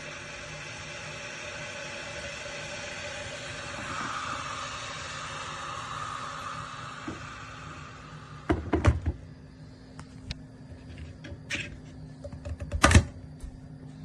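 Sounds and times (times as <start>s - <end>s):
hiss: 0.0s - 10.3s
steady low hum: 0.0s - 14.0s.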